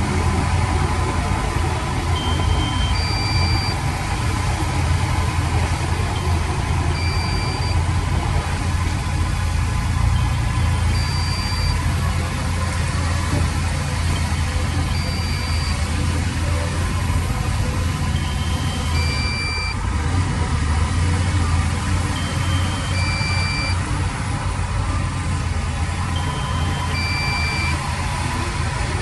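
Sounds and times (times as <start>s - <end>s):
heavy diesel engine idling: 0.0s - 29.0s
electronic two-note beep: 2.2s - 3.8s, 6.2s - 7.8s, 10.2s - 11.8s, 18.2s - 19.8s, 22.2s - 23.8s, 26.1s - 27.8s.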